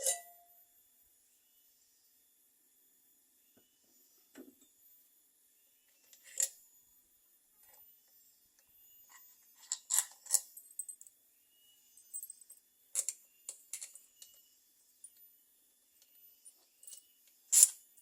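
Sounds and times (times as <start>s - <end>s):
small metal parts clinking: 6.1s - 6.6s, 9.1s - 11.2s, 11.9s - 15.2s, 16.0s - 18.0s.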